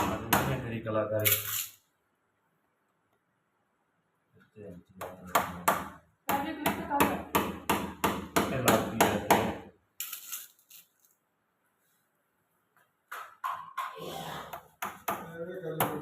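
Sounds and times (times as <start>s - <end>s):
hammer striking: 5.0s - 9.6s.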